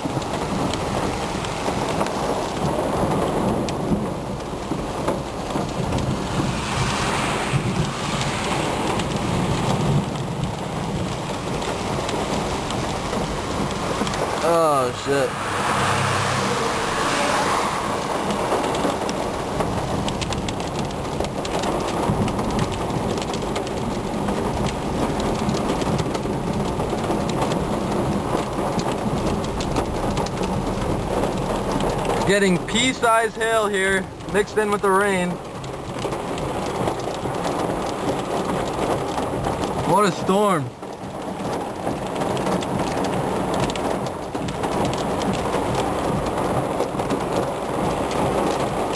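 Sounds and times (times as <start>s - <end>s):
hailstones ticking: 0.0s - 15.3s, 18.0s - 48.9s
heavy rain on a vehicle: 0.0s - 48.9s.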